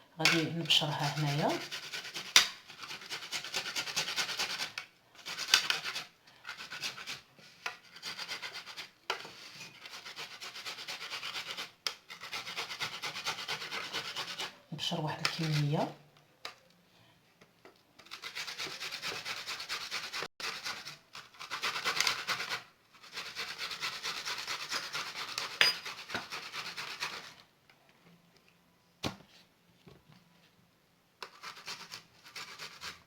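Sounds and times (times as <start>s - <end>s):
onion grated on hand grater: 0.2s - 16.0s, 18.0s - 27.4s, 31.2s - 33.0s.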